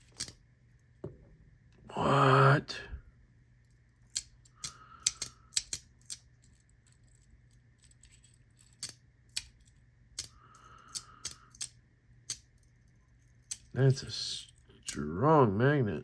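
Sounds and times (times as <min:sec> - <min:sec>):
metal parts clicking together: 0:00.0 - 0:00.4, 0:04.0 - 0:13.7.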